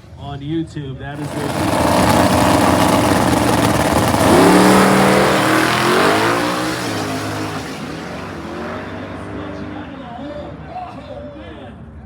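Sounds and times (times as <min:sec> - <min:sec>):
drag cars accelerating hard: 0:01.2 - 0:10.8.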